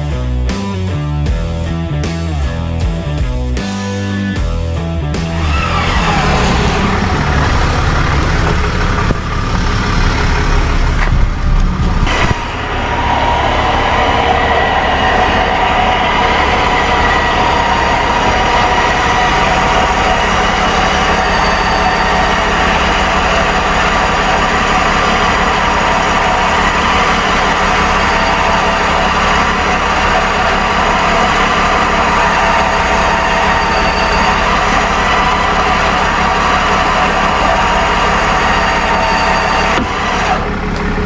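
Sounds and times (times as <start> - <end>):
background music: 0.0 - 22.0
high even whine: 0.0 - 41.0
truck engine running: 0.0 - 41.0.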